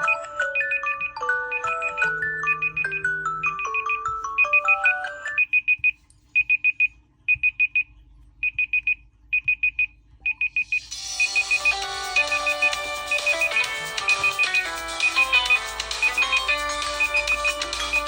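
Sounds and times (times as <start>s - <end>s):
melodic ringtone: 0.0s - 5.5s, 10.4s - 18.0s
music ringtone: 0.0s - 5.5s, 10.3s - 18.0s
high electronic beeps: 0.0s - 5.9s, 9.4s - 18.0s.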